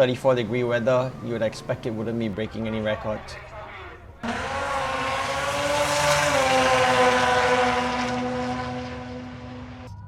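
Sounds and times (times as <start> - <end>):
racing car engine at high revs: 4.2 - 9.9.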